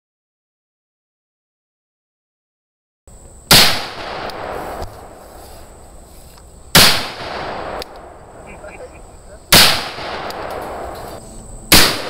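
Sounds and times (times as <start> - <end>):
gunshots echoing: 3.5 - 5.2, 6.7 - 8.8, 9.5 - 12.0.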